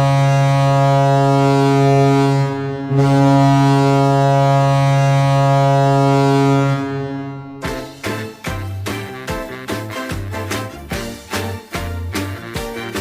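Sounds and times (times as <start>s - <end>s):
arena goal horn blasts: 0.0s - 8.1s.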